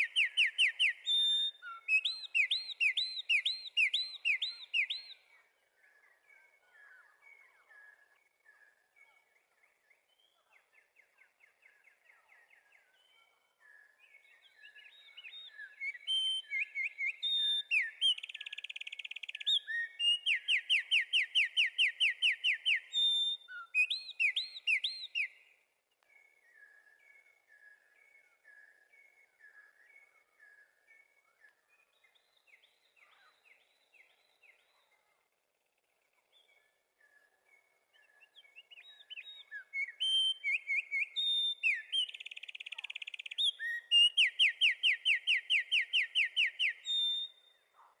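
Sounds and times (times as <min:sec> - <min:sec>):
wren singing: 0:00.0 - 0:06.0, 0:14.0 - 0:25.4, 0:37.9 - 0:47.5
faint soft bird calls: 0:00.0 - 0:48.0.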